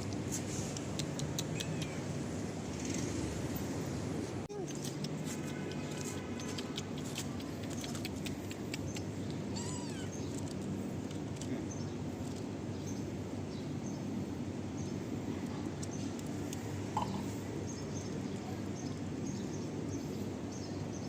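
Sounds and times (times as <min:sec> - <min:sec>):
cat meowing: 0:09.5 - 0:10.2.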